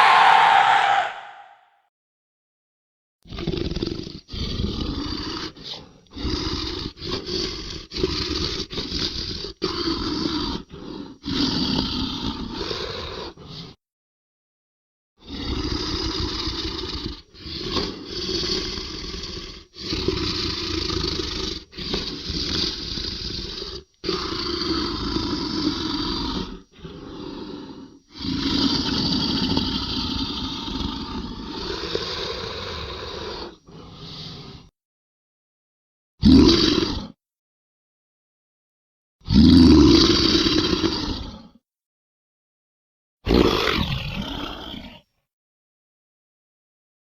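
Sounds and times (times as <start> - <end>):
dragon growls and roars: 0.0 - 1.6, 15.2 - 34.7, 36.2 - 37.2, 39.3 - 41.6, 43.3 - 45.2.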